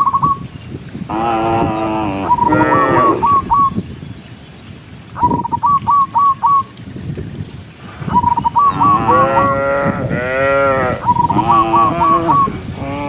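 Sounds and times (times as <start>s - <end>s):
bird singing: 0.0s - 9.6s, 11.0s - 13.0s
cow mooing: 1.1s - 3.4s, 8.7s - 13.0s.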